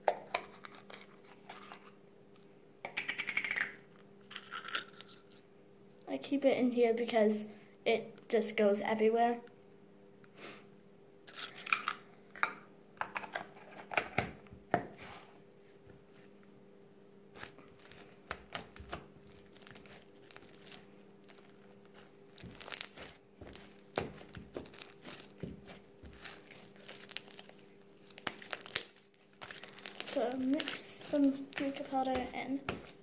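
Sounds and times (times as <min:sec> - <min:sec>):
faint steady hum: 0:00.0 - 0:33.0
materials crinkling: 0:17.3 - 0:33.0.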